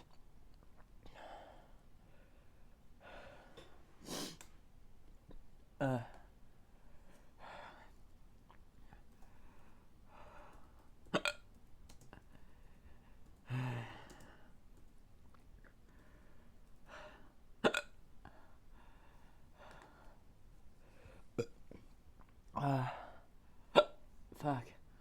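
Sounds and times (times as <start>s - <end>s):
breathing: 1.0s - 4.5s, 8.8s - 10.8s, 12.3s - 14.6s, 15.9s - 17.4s, 18.3s - 20.2s, 20.8s - 21.3s
man hiccuping: 11.2s - 11.4s, 17.6s - 17.9s, 23.8s - 24.0s.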